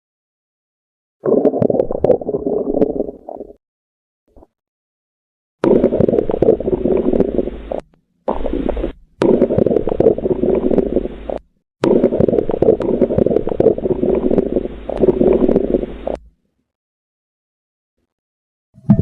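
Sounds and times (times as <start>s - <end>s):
bowel gurgling and rumbling: 1.2s - 3.6s, 5.6s - 16.4s.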